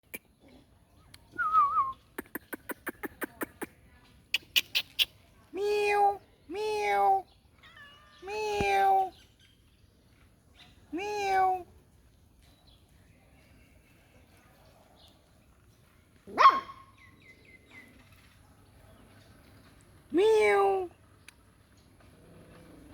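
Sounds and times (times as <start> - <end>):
quick sharp clicks: 2.2 - 3.7
cat meowing: 7.6 - 8.9.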